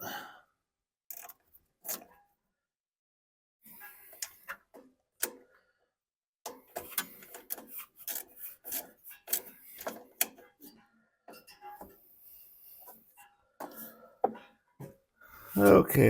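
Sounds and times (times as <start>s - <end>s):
metallic clicks and scraping: 1.1s - 2.2s, 6.5s - 12.0s.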